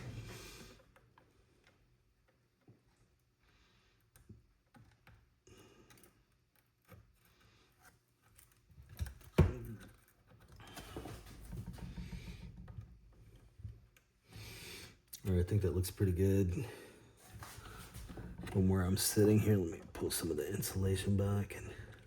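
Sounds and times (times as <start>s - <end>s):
rustling scrape: 17.2s - 18.6s.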